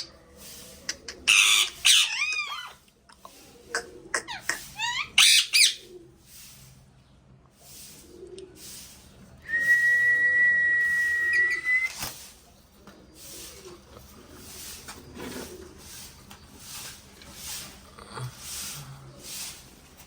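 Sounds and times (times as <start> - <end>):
long steady whistle: 9.5 - 12.0.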